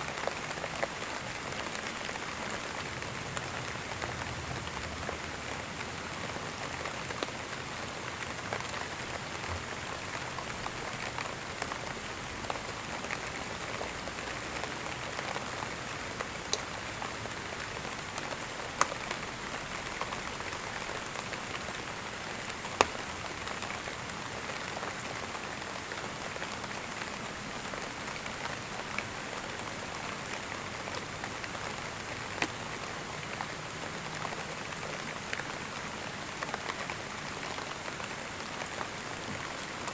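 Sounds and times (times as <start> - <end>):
steady rain hissing: 0.0 - 39.9.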